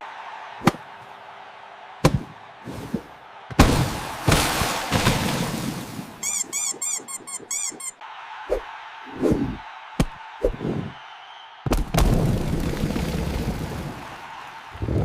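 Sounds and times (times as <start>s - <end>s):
short high squeaks: 6.2s - 8.0s.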